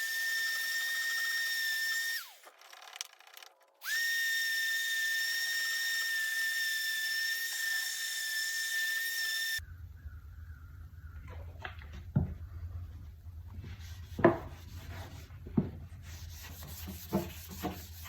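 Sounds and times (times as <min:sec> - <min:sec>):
electric sander whining: 0:03.8 - 0:09.6.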